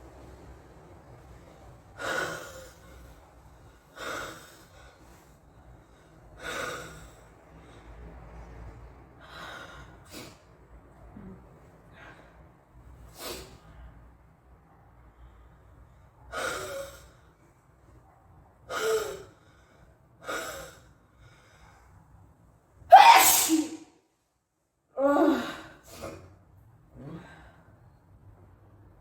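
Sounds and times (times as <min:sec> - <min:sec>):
person sneezing: 0:22.9 - 0:23.8
breathy sounds: 0:27.0 - 0:27.8.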